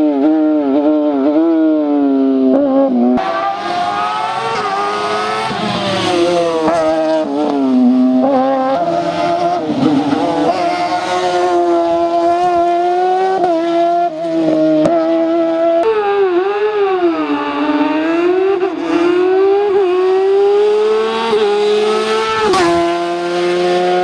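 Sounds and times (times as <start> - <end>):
race car engine at high revs: 0.0 - 24.0
engine gear changes: 22.2 - 23.0.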